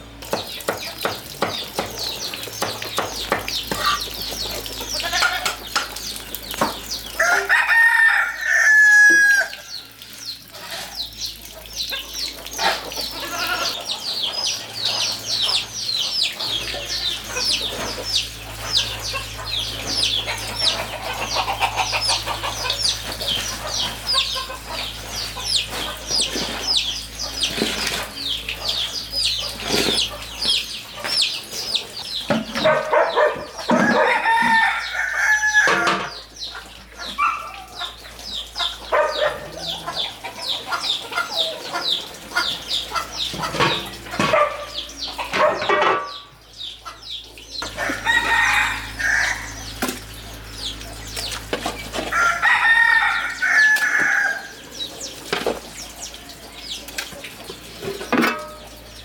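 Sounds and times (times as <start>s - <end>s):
chicks peeping: 0.1s - 59.0s
rooster crowing: 7.2s - 9.8s, 33.6s - 36.2s, 47.6s - 49.8s, 52.1s - 54.6s.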